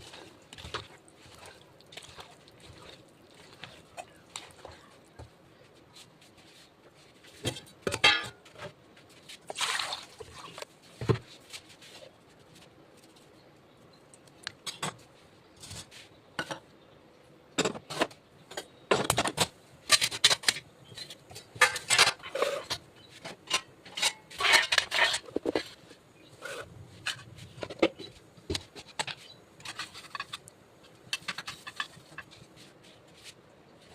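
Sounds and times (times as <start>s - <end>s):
utensils clinking on pots and dishes: 7.5s - 8.7s, 17.6s - 25.8s, 27.0s - 30.4s, 31.0s - 32.3s.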